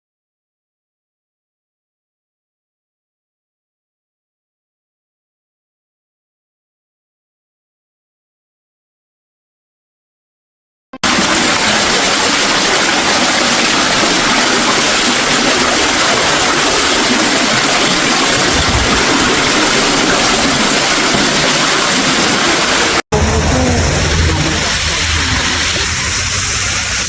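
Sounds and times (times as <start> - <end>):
water rushing loudly: 11.0 - 27.0.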